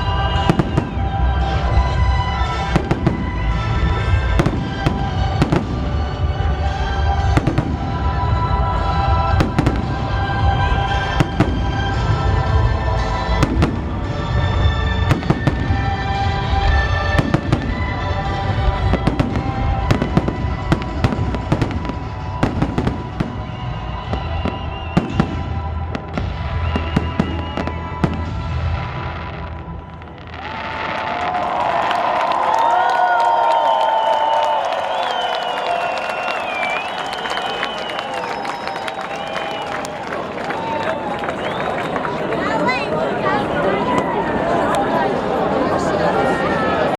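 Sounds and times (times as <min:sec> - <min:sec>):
music with long held notes: 0:00.0 - 0:30.9
fireworks bangs: 0:00.0 - 0:32.6.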